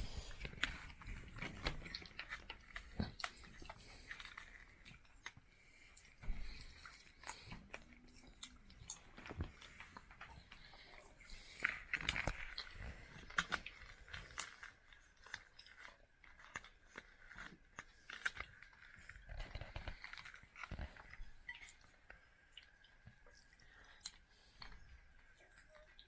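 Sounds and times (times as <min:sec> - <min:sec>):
people crunching hard sweets: 0:00.0 - 0:26.0
popping candy crackles: 0:07.3 - 0:26.0.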